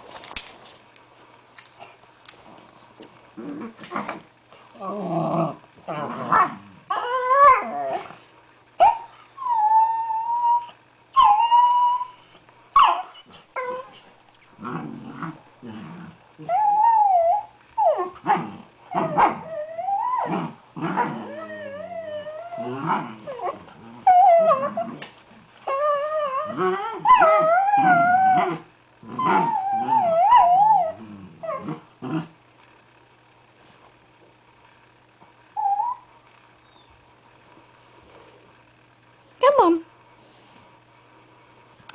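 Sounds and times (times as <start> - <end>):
dogs growling and grunting: 3.3 - 8.3, 13.1 - 32.4
dogs howling and whining: 4.8 - 8.2, 8.8 - 14.1, 16.4 - 31.9, 35.5 - 36.9.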